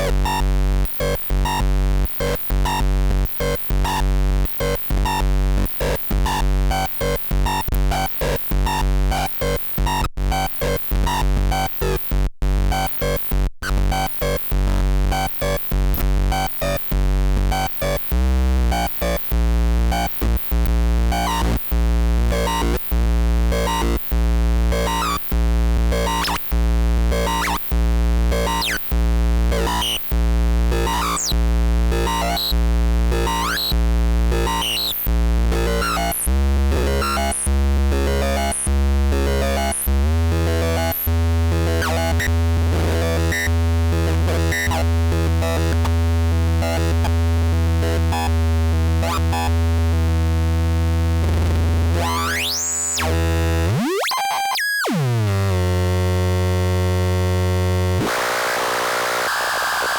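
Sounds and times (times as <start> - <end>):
fast electronic sweep: 58.0 - 59.9.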